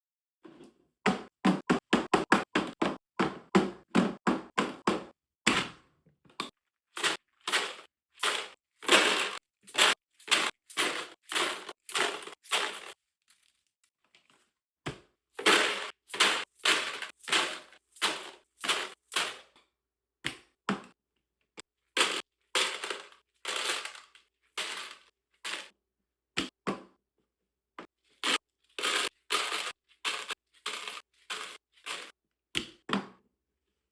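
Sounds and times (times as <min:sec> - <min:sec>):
ammunition boxes clacking: 0:07.0 - 0:13.0, 0:15.4 - 0:19.4, 0:22.0 - 0:25.7, 0:28.2 - 0:32.1.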